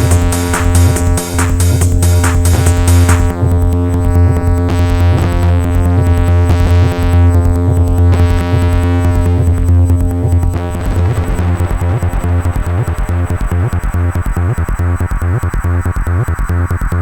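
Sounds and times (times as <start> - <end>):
held synth tones: 0.0 - 4.2
deep bass drone: 0.0 - 17.0
fast ticking hi-hats: 0.0 - 17.0.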